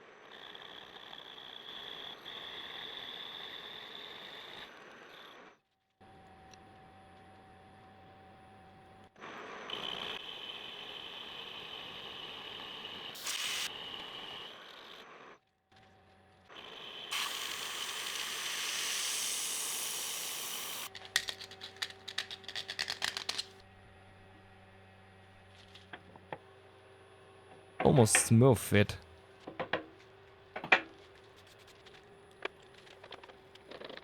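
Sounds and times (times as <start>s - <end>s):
hiss: 13.2s - 13.7s, 17.1s - 20.9s
rapid metallic clicks and rattles: 20.9s - 23.5s.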